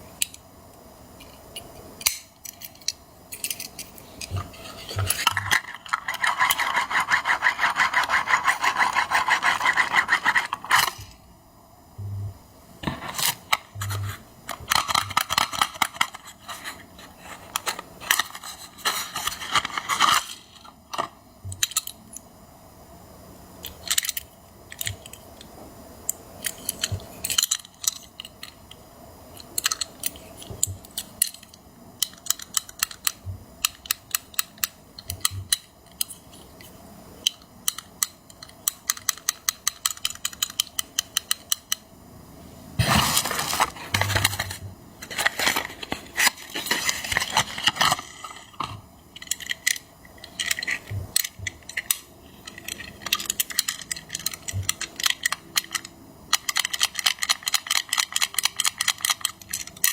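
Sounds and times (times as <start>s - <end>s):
toy truck clicks and taps: 29.4s - 36.1s, 37.2s - 41.8s, 49.2s - 59.9s
packaging rustling: 42.8s - 48.7s.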